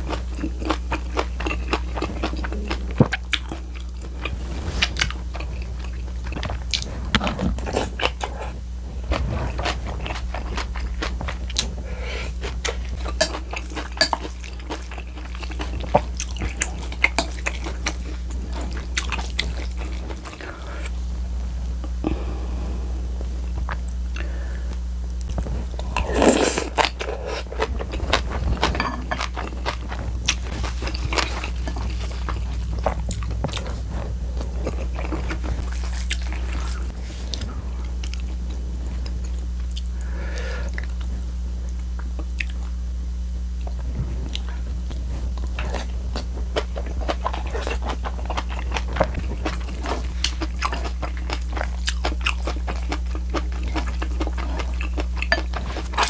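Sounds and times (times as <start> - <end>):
crunchy chewing: 0.0 - 22.5, 23.1 - 42.8, 43.6 - 56.0
steady low hum: 0.0 - 56.0
wet mouth sounds: 29.6 - 37.5.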